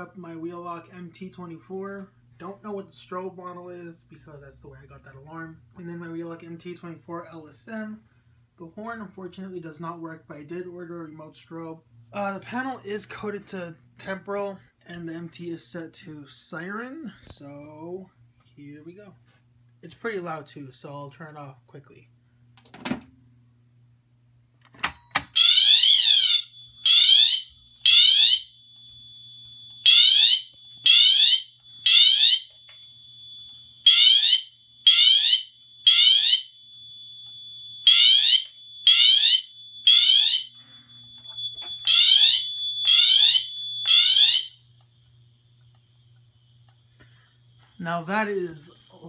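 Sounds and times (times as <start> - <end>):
alarm siren blasts: 25.3 - 49.0.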